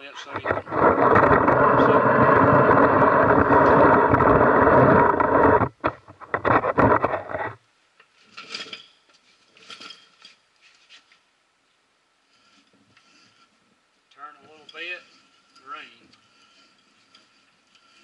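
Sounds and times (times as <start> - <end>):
hand reamer scraping metal: 0.1 - 5.7, 12.3 - 18.0.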